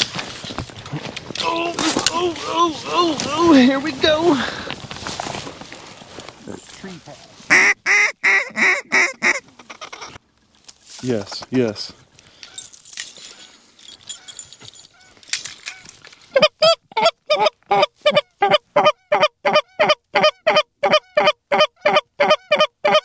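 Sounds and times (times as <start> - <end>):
goose honking: 7.5 - 10.2, 15.0 - 23.0.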